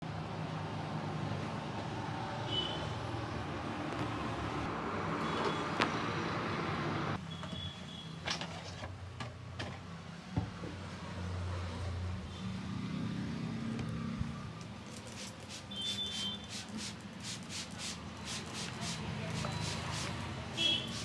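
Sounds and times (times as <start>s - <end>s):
vehicle engines passing: 0.2s - 7.2s, 10.8s - 21.0s.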